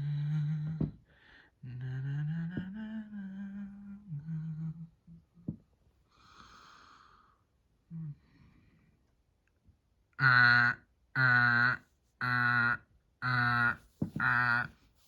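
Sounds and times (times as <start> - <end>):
soft breathy exhale: 6.1 - 7.4
person humming: 10.2 - 14.7.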